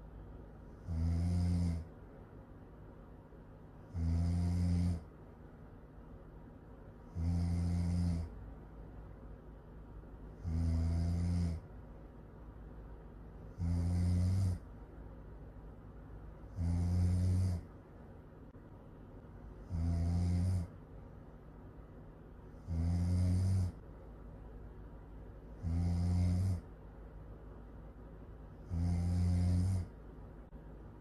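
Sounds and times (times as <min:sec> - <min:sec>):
loud snoring: 0:00.7 - 0:01.9, 0:03.8 - 0:05.1, 0:07.0 - 0:08.4, 0:10.4 - 0:11.7, 0:13.5 - 0:14.7, 0:16.5 - 0:17.7, 0:19.6 - 0:20.8, 0:22.5 - 0:23.8, 0:25.5 - 0:26.7, 0:28.6 - 0:30.0
quiet breathing: 0:03.7 - 0:05.3.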